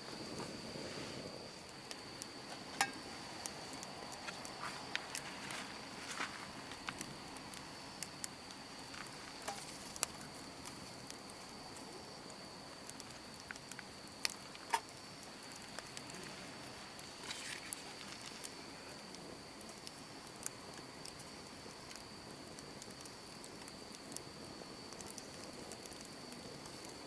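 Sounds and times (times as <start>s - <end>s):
campfire crackling: 0.0s - 27.0s.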